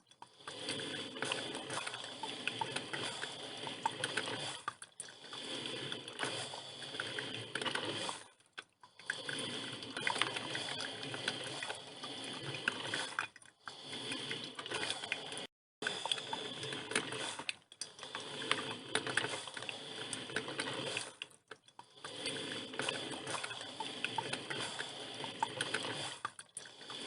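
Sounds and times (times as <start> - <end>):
coffee machine bubbling and sputtering: 0.0 - 27.0.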